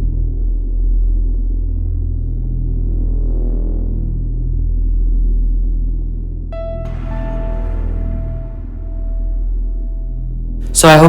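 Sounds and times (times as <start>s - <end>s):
low droning background music: 0.0s - 11.0s.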